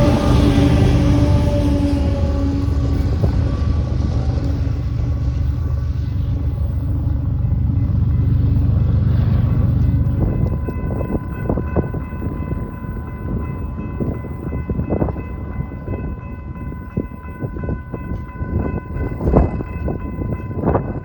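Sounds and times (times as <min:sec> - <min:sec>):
locomotive horn chord: 0:00.0 - 0:07.0
train rumbling: 0:00.0 - 0:21.0
wind buffeting microphone: 0:00.0 - 0:21.0.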